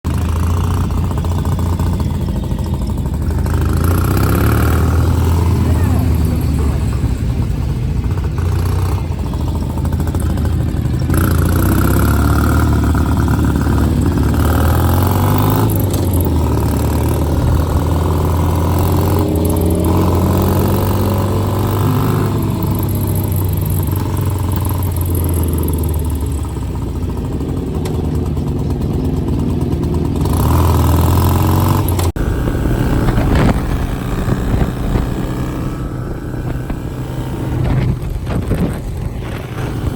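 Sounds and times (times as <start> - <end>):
motorcycle engine close by: 0.0 - 39.9
other motorcycles running: 0.1 - 39.9.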